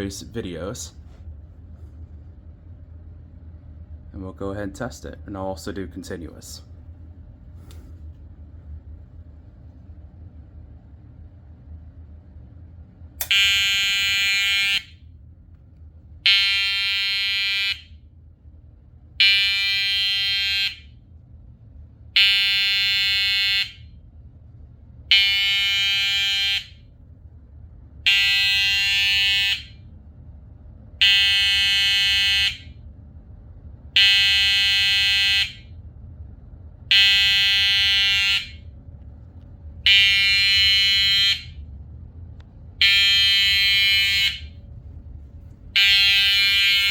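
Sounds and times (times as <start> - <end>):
fire alarm horn blasts: 13.2 - 15.1, 16.2 - 18.1, 19.2 - 21.0, 22.1 - 24.0, 25.1 - 26.9, 28.0 - 29.9, 31.0 - 32.8, 34.0 - 35.8, 36.9 - 38.7, 39.8 - 41.7, 42.8 - 44.8, 45.7 - 46.9.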